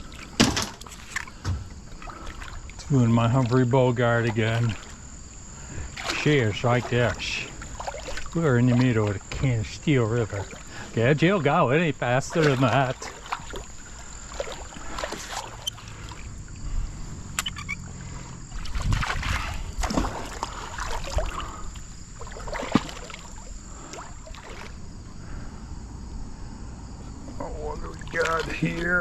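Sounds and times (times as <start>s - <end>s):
water sloshing and splashing: 0.0s - 25.4s, 27.4s - 29.0s.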